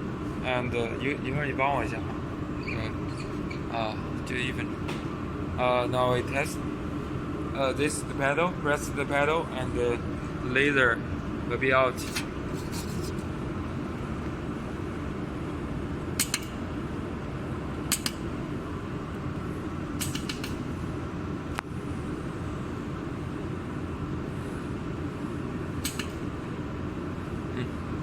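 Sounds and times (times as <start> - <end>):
laser welder snapping clicks: 20.0 - 20.6, 25.8 - 26.2.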